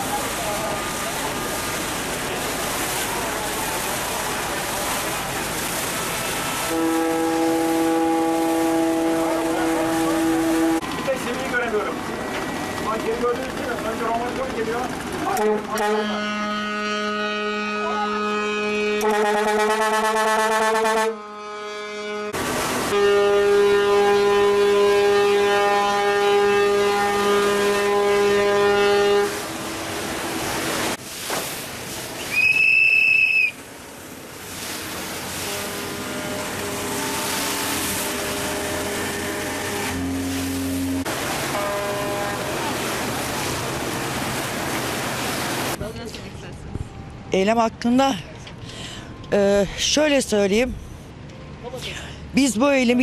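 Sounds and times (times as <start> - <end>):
rushing noise on water: 0.0 - 47.5
boat horn blast: 6.3 - 10.9, 15.3 - 30.0, 35.3 - 43.6.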